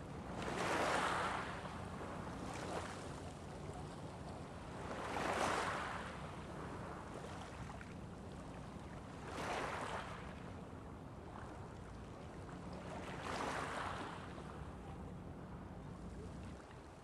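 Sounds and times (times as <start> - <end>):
surf washing on a beach: 0.0 - 3.7.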